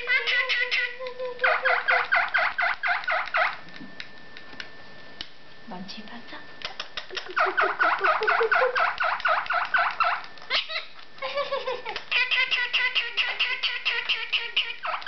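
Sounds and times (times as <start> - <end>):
parrot squawking: 0.0 - 3.6, 7.2 - 11.0, 12.0 - 15.0.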